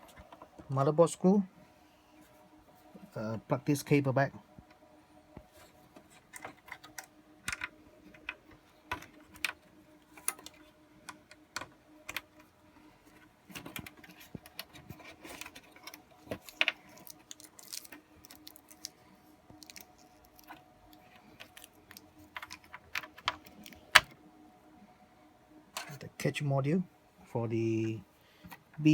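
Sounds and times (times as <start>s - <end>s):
faint steady hum: 0.0s - 28.9s
hands handling cables and connectors: 5.3s - 24.2s.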